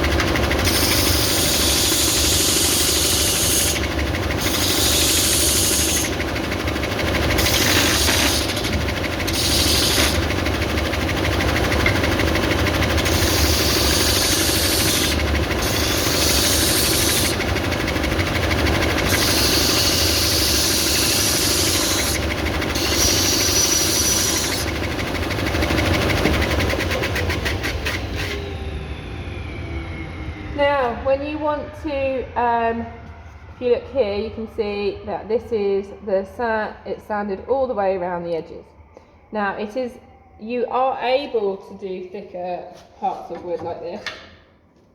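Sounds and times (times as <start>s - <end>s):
belt sander motor hum: 0.0s - 31.6s
motor winding down: 0.0s - 32.4s
wood hissing against sanding belt: 0.6s - 6.2s, 7.3s - 10.4s, 12.8s - 17.6s, 18.6s - 28.0s.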